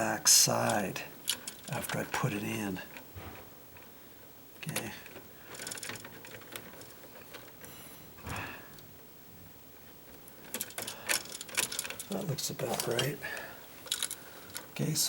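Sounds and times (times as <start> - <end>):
wire strippers clicking and snipping: 4.6 - 7.7, 10.1 - 13.2.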